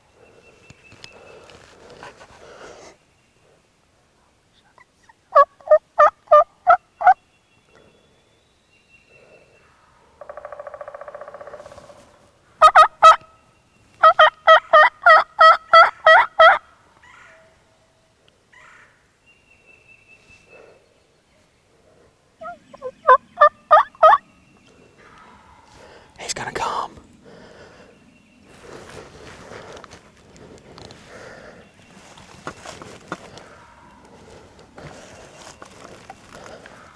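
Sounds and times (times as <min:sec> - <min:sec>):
turkey gobble: 0:05.3 - 0:07.2, 0:12.6 - 0:13.2, 0:14.0 - 0:17.4, 0:22.4 - 0:24.2
turkey yelping: 0:05.3 - 0:07.2, 0:12.6 - 0:13.2, 0:14.0 - 0:17.4, 0:22.4 - 0:24.2.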